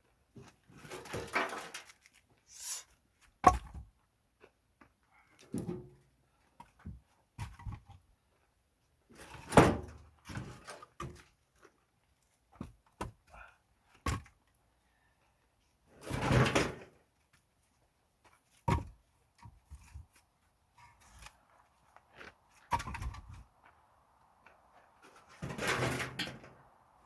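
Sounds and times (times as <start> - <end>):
logs knocking and thudding: 3.4 - 3.9, 6.6 - 8.0, 14.0 - 14.3, 18.6 - 20.0, 22.7 - 23.5.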